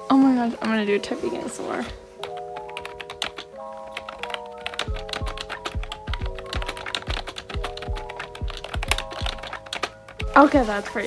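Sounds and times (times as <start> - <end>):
background music with beat: 1.9 - 11.0.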